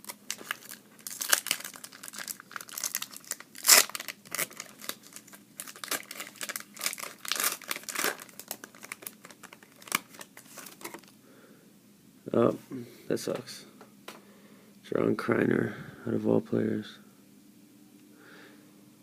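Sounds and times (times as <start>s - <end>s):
wrapper tearing and crinkling: 0.0s - 11.1s.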